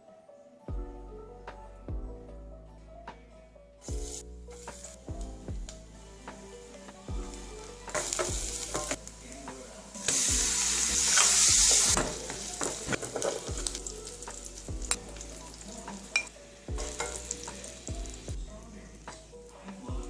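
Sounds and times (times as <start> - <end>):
food sizzling in hot oil: 3.8 - 5.1, 5.7 - 18.3.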